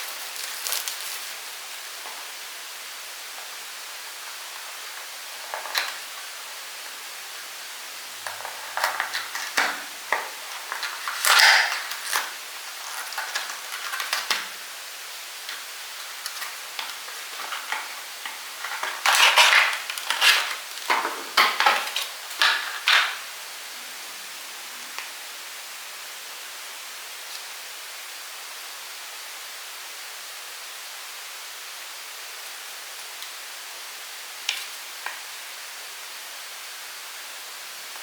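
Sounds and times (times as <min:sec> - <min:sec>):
packaging clicks and rustles: 0:00.0 - 0:02.2, 0:04.3 - 0:06.3, 0:08.2 - 0:14.7, 0:15.4 - 0:23.2
steady hiss: 0:00.0 - 0:38.0.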